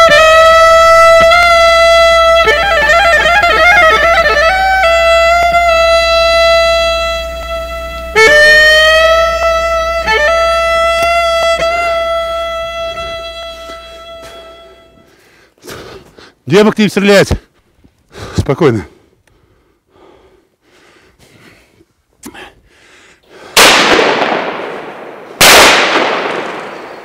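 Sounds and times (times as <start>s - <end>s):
instrument holding high note: 0.0s - 15.1s.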